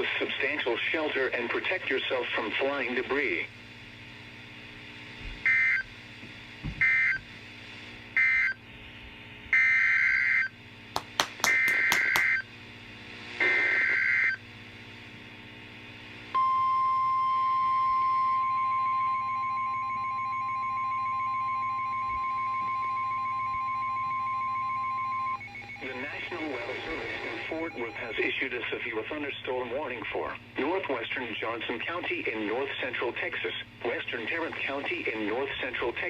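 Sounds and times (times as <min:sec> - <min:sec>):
steady attention tone: 0:16.4 - 0:28.5
warbling data tone bursts: 0:18.8 - 0:28.3.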